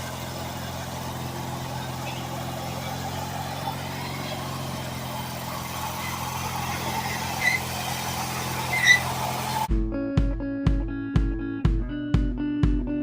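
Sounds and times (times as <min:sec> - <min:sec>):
engine idling: 0:00.0 - 0:09.7.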